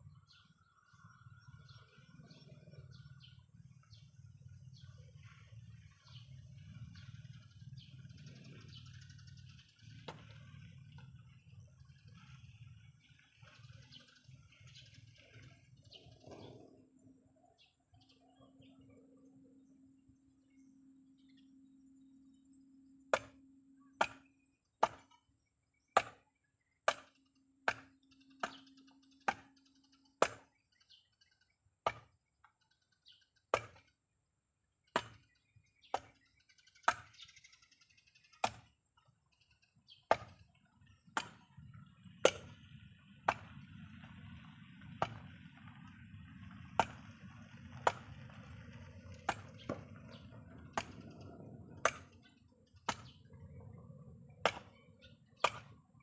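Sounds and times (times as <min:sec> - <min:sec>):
sharp chopping strikes: 0:23.1 - 0:25.2, 0:26.0 - 0:29.6, 0:30.2 - 0:30.6, 0:31.8 - 0:32.2, 0:33.5 - 0:33.9, 0:34.9 - 0:37.2, 0:38.4 - 0:38.8, 0:40.1 - 0:40.5, 0:41.1 - 0:41.6, 0:42.2 - 0:42.6, 0:43.3 - 0:44.1, 0:44.9 - 0:45.3, 0:46.7 - 0:47.1, 0:47.8 - 0:48.2, 0:49.2 - 0:49.8, 0:50.8 - 0:51.1, 0:51.8 - 0:52.2, 0:52.9 - 0:53.2, 0:54.4 - 0:54.8, 0:55.4 - 0:55.8.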